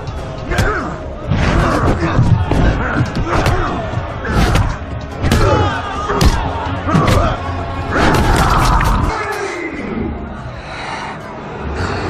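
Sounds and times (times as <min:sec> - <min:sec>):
fighters grunting and shouting: 0:00.0 - 0:10.6
background music: 0:00.0 - 0:12.0
punch and kick impacts: 0:00.5 - 0:07.4.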